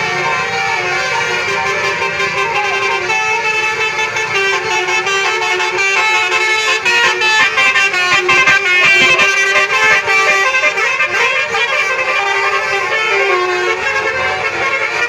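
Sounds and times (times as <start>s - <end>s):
bus musical horns playing a tune: 0.0s - 15.0s.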